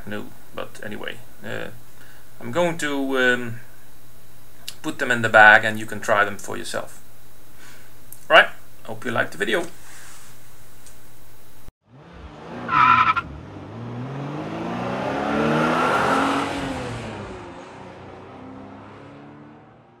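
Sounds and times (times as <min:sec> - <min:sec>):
steady hum: 0:00.0 - 0:11.7
car engine revving: 0:11.8 - 0:20.0
tyre squeal: 0:12.7 - 0:13.3.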